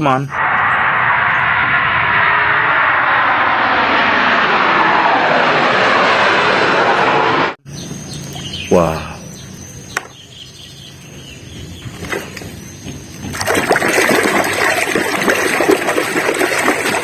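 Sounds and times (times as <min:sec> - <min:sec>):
water running and splashing: 0:13.3 - 0:17.0.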